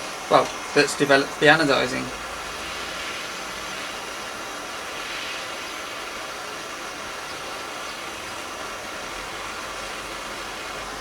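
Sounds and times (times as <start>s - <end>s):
blowtorch flame hissing: 0.0s - 11.0s.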